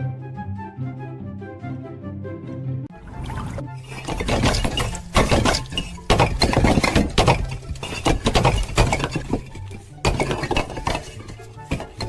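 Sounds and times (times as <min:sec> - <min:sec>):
sharp clinks and crashing impacts: 0:03.8 - 0:12.0.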